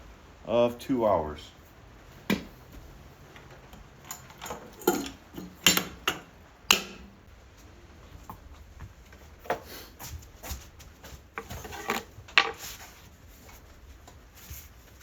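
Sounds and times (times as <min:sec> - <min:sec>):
hard objects clicking and knocking: 0:02.2 - 0:07.3
rasping scrapes: 0:11.4 - 0:13.0.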